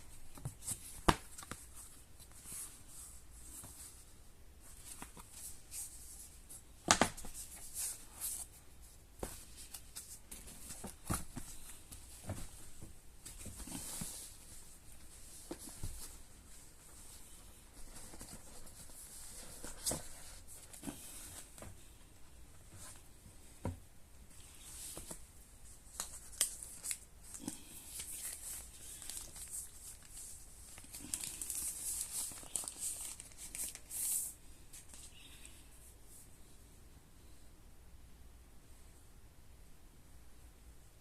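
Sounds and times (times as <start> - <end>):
plastic and paper crinkling: 25.8 - 35.2.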